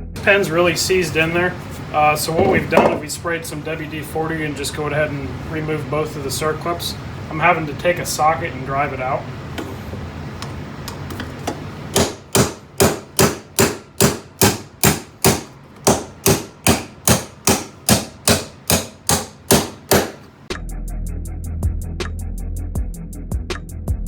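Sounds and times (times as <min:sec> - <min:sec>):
music: 0:00.0 - 0:00.5, 0:20.5 - 0:24.0.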